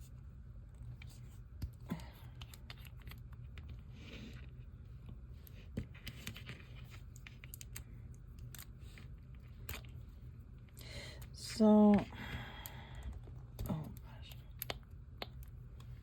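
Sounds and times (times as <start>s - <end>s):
soft rustles: 0.0s - 10.8s
steady low hum: 0.0s - 16.0s.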